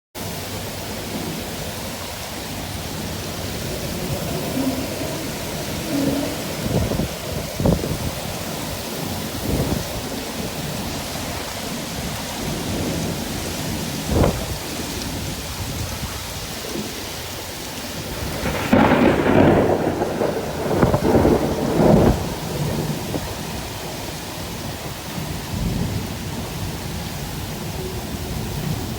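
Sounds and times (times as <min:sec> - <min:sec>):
heavy rain: 0:00.2 - 0:28.9
rolling thunder rumble: 0:00.2 - 0:28.9
thunder crack: 0:02.6 - 0:15.4, 0:18.0 - 0:26.8.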